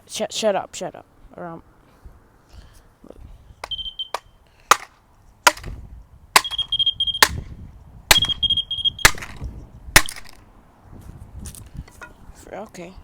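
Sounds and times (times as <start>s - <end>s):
high-pitched alarm beeps: 3.6s - 4.2s, 6.4s - 7.4s, 8.2s - 9.2s
stick whacking smoke detector: 6.4s - 7.4s, 8.1s - 9.4s.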